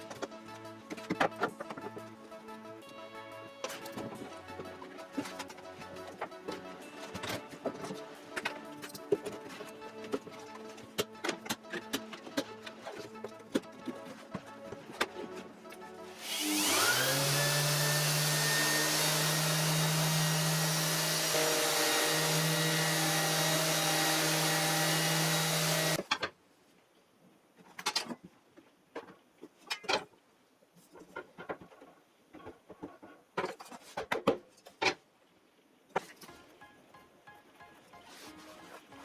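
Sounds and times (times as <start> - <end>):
power tool motor whining: 16.1 - 26.0.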